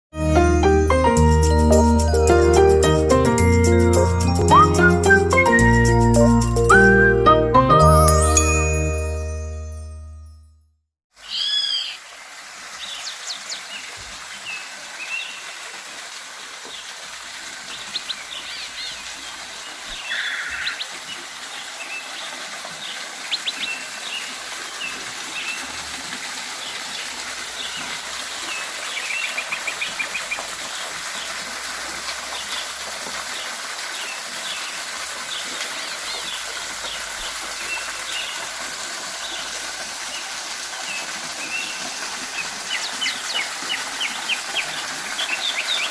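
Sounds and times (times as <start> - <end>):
small birds chirping and trilling: 11.2 - 12.0, 17.7 - 22.1, 40.9 - 45.9
waterfall rushing: 11.2 - 45.9.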